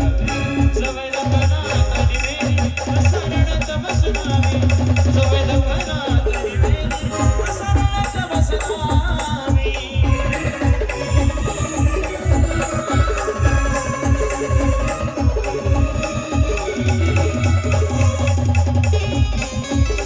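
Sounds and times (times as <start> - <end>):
fast heavy drum beat: 0.0 - 20.0
live band music: 0.0 - 20.0
rattling shaker percussion: 0.0 - 20.0
sustained melody line: 4.6 - 20.0.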